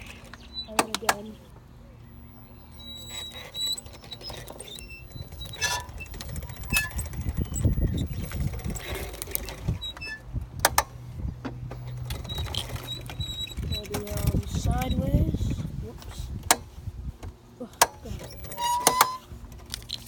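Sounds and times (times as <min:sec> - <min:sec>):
quad bike engine running: 0:02.0 - 0:15.6.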